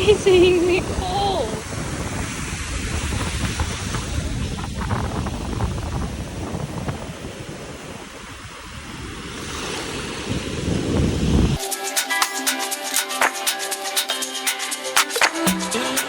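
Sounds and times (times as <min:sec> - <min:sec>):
wind buffeting microphone: 0:00.0 - 0:11.6
ocean surf: 0:00.0 - 0:16.0.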